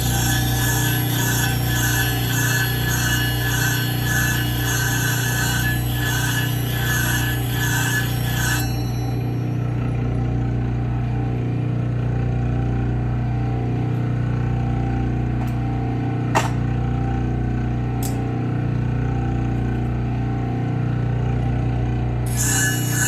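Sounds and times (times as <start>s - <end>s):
sharpening machine motor hum: 0.0s - 10.2s, 22.3s - 23.0s.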